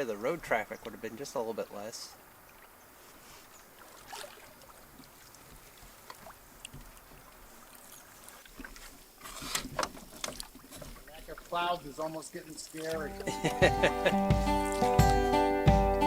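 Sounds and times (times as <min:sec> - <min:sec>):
water drips: 0:00.0 - 0:13.7
paddle strokes swishing: 0:02.5 - 0:13.6
water splash: 0:03.6 - 0:13.9.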